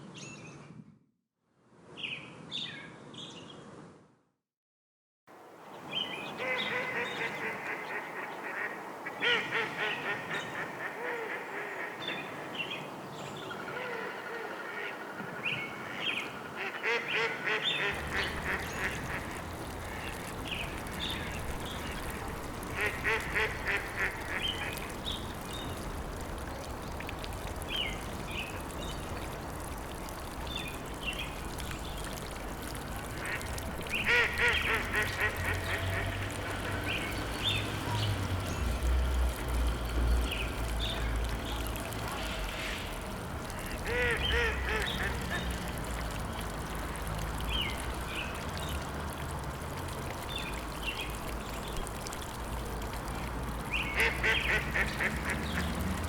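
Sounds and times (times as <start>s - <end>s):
birds calling: 15.9s - 26.9s.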